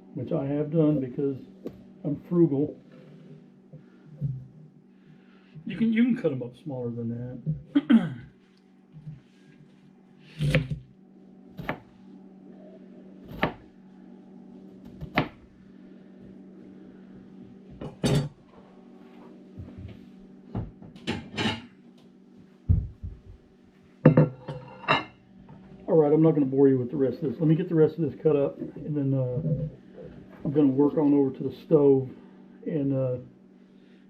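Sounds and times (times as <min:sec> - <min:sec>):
steady low hum: 0:00.0 - 0:34.0
knife chopping on cutting board: 0:10.4 - 0:10.8, 0:11.6 - 0:11.9, 0:13.2 - 0:13.7, 0:14.8 - 0:15.4.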